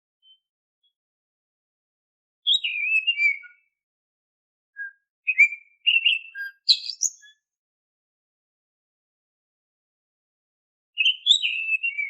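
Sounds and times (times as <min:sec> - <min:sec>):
bird whistled song: 0:00.2 - 0:00.5, 0:02.4 - 0:03.8, 0:04.8 - 0:07.5, 0:11.0 - 0:12.0.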